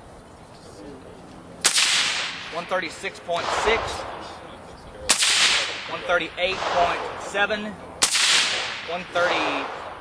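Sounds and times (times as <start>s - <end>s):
suppressed gunshot with echo: 1.6s - 2.7s, 5.1s - 7.4s, 8.0s - 10.0s.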